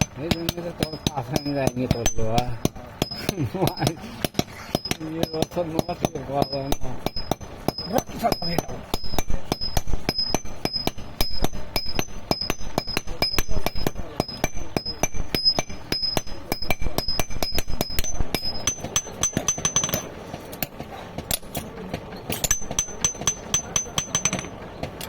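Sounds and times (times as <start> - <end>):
hammer ringing on anvil: 0.0 - 20.1, 22.3 - 24.6.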